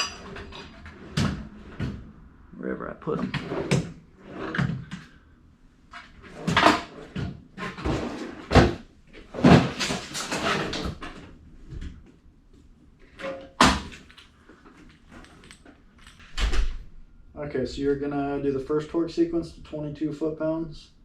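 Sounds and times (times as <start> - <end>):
tools clattering in toolbox: 13.2 - 16.4.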